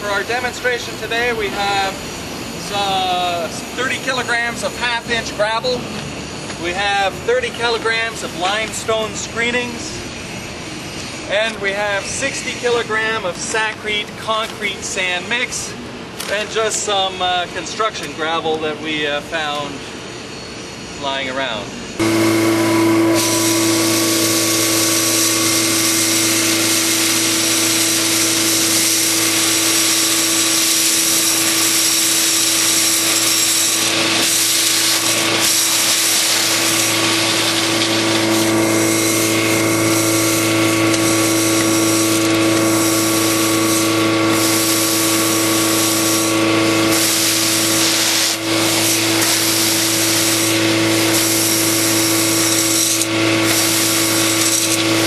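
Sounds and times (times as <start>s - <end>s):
industrial vacuum humming: 0.0s - 12.1s, 21.8s - 55.0s.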